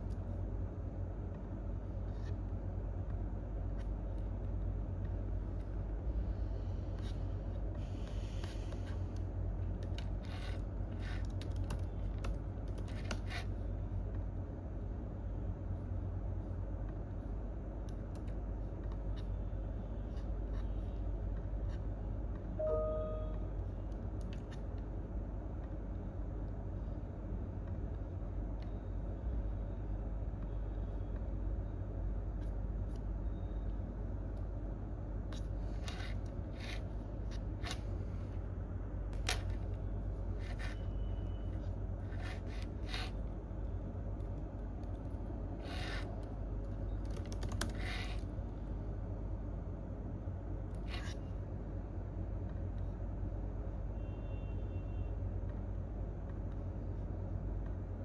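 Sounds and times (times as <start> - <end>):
low room hum: 0.0 - 58.0
computer keyboard and mouse clicks: 9.8 - 13.5, 45.8 - 48.3
brief squeak-like tone: 22.6 - 23.5.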